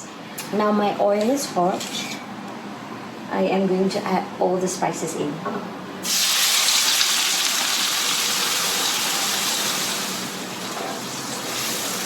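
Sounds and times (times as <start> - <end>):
paste sizzling in hot oil: 6.0 - 12.0.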